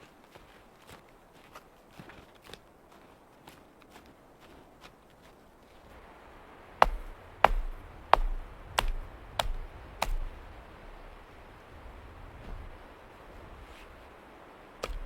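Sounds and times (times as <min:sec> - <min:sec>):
sharp chopping strikes: 0:06.8 - 0:10.4.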